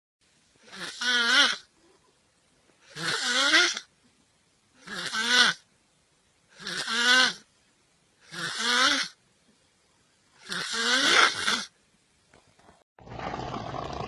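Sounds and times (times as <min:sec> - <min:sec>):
person snoring heavily: 0:00.6 - 0:01.7, 0:08.2 - 0:09.2, 0:10.4 - 0:11.7.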